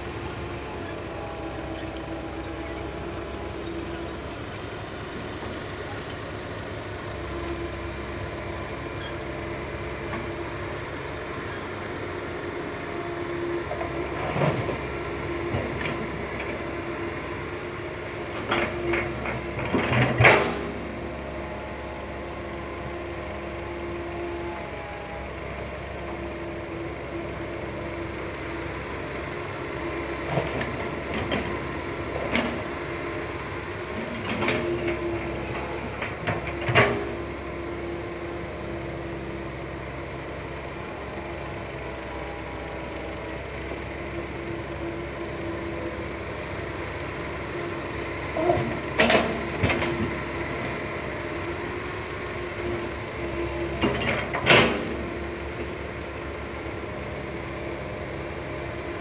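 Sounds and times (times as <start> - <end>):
excavator diesel engine whining: 0.0 - 59.0
excavator clanks and thuds: 13.7 - 17.1, 18.2 - 21.7, 30.2 - 39.0, 47.6 - 56.0.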